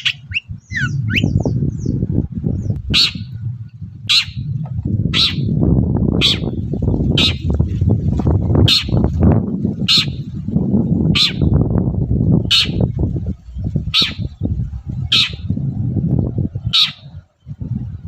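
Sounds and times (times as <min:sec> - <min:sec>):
low rumbling noise: 0:00.0 - 0:18.0
bird making harsh calls: 0:02.9 - 0:03.3, 0:11.2 - 0:11.5, 0:16.7 - 0:17.1.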